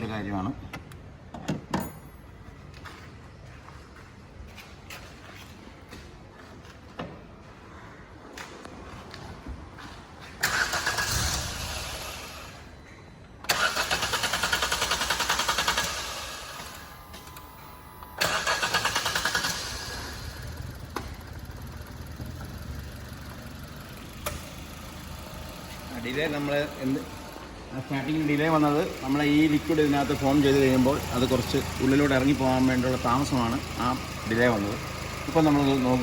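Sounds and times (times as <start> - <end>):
engine cranking on starter: 10.4 - 12.6, 13.4 - 36.0
car engine idling: 13.5 - 36.0.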